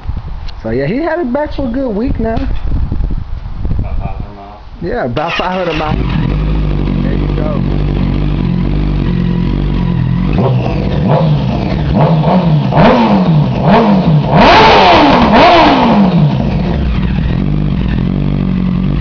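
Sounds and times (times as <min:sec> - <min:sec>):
motorcycle engine revving: 0:05.2 - 0:19.0.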